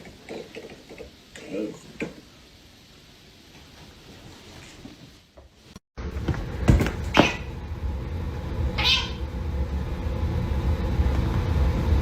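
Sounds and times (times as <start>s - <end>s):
steady low hum: 6.0s - 12.0s
cat meowing: 8.8s - 9.2s.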